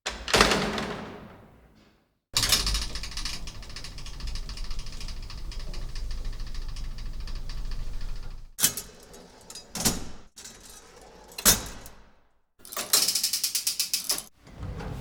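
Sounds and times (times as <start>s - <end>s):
fast ticking rattle: 2.4s - 8.6s.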